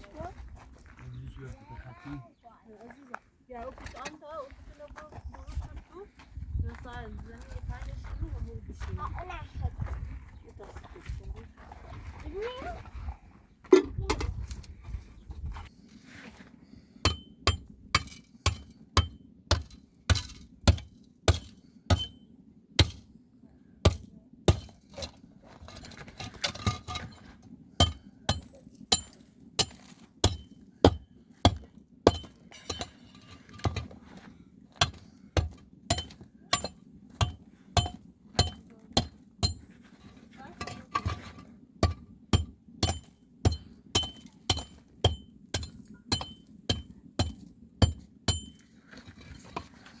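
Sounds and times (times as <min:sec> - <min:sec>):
low steady hum: 0:00.0 - 0:50.0
sharp ringing knocks: 0:17.0 - 0:23.1, 0:27.8 - 0:33.9, 0:34.8 - 0:39.9, 0:41.8 - 0:48.6.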